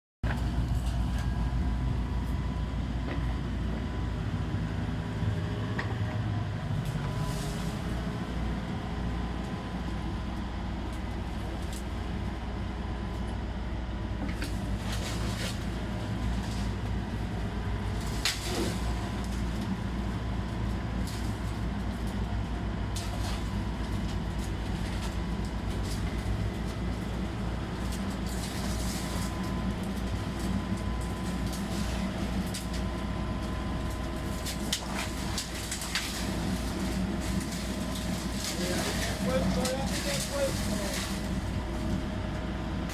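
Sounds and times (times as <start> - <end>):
excavator diesel engine running: 0.2 - 42.9.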